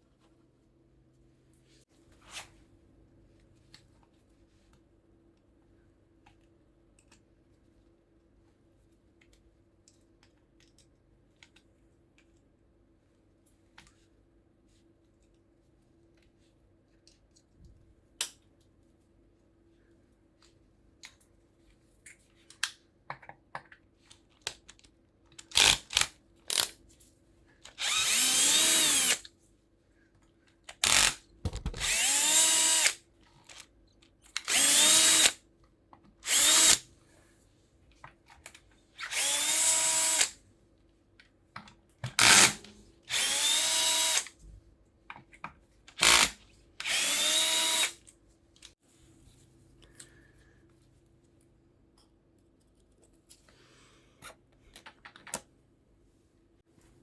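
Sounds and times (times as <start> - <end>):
cordless drill spinning: 25.5 - 26.6, 27.7 - 29.2, 30.7 - 33.0, 34.4 - 35.4, 36.2 - 36.8, 39.0 - 40.4, 42.2 - 44.3, 45.9 - 48.0.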